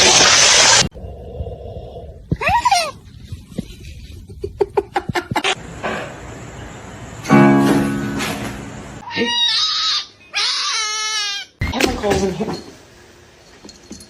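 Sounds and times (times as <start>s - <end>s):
acoustic guitar plucked notes: 7.3s - 9.0s.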